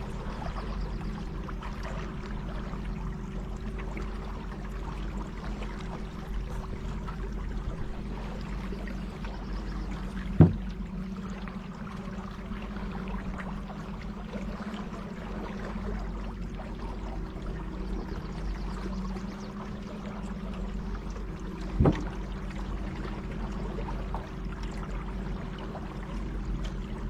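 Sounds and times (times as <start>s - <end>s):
steady low hum: 0.0s - 27.0s
water trickling and splashing: 0.0s - 27.0s
sharp knock: 10.4s - 10.7s.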